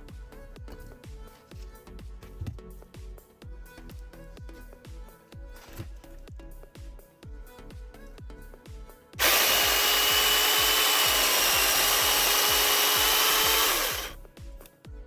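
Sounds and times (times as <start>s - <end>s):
music with steady beat: 0.0s - 15.0s
battery chainsaw cutting wood: 9.2s - 14.2s.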